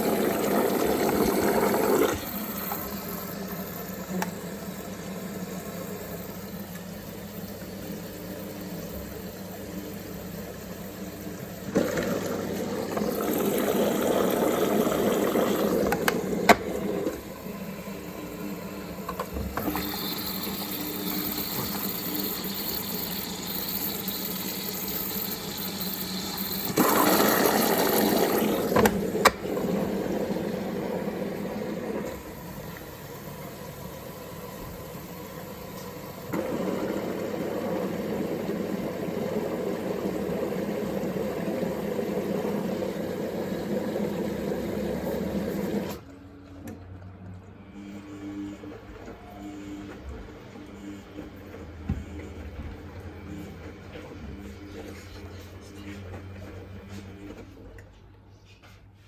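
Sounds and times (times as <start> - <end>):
water rushing into drum: 0.0 - 4.1, 19.3 - 33.1
washing machine low hum: 0.0 - 59.0.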